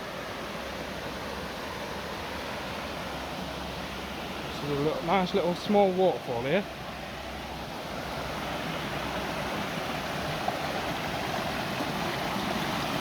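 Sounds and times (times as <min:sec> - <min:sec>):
small waterfall rushing: 0:00.0 - 0:13.0.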